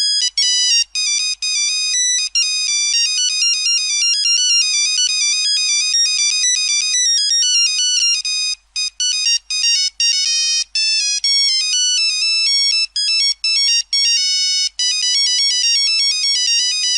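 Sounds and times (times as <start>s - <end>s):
mobile phone ringtone melody: 0.0s - 16.9s.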